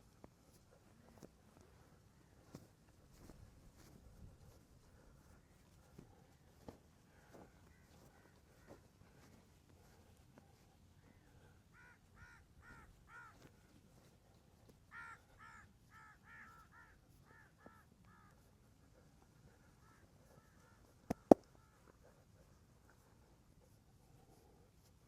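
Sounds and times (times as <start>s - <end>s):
sharp cracks: 21.1s - 21.5s.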